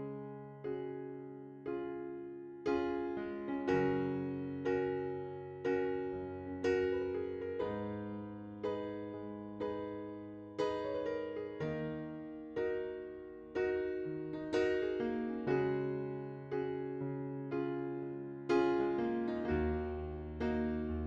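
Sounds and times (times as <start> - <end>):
gentle piano tune: 0.0 - 21.0.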